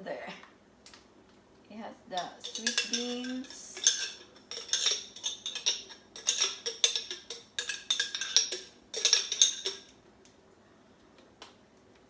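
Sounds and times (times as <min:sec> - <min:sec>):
utensil clinking against container: 0:02.2 - 0:09.9.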